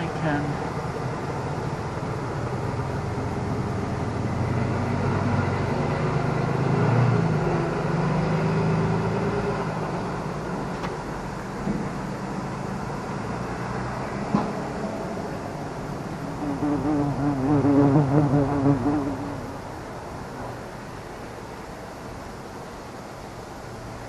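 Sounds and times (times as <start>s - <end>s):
vehicle passing: 0.0s - 10.7s, 12.1s - 20.3s
road traffic rumble: 0.0s - 24.0s.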